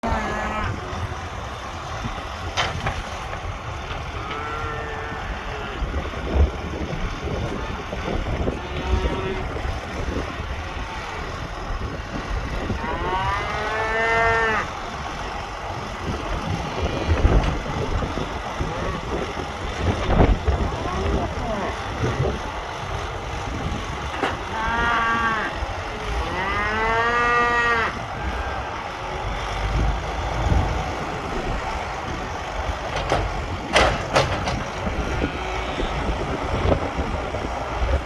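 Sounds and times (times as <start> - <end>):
cattle mooing: 0.0 - 1.0, 4.2 - 6.2, 8.5 - 9.6, 12.5 - 14.8, 20.6 - 22.4, 24.1 - 30.2, 34.9 - 38.0
low rumbling: 0.0 - 38.0
thumps: 32.9 - 35.2.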